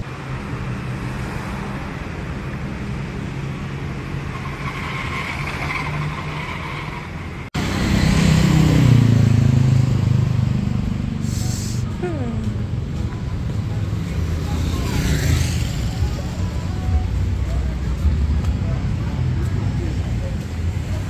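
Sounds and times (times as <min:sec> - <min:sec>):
vehicle engines running: 0:04.8 - 0:21.0.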